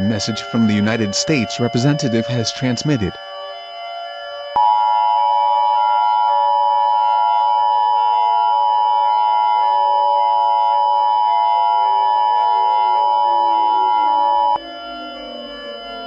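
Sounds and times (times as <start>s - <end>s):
electronic two-tone alert: 4.6s - 16.0s.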